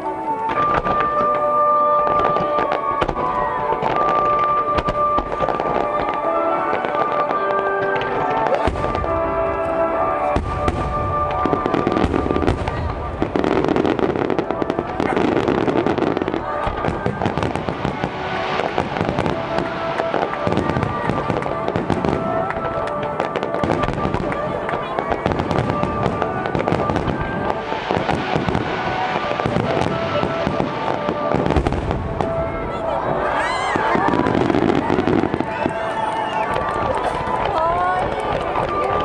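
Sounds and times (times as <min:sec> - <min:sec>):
fireworks bursting and crackling: 0:00.0 - 0:39.0
music on loudspeakers: 0:00.0 - 0:39.0
deep firework booms: 0:02.0 - 0:39.0.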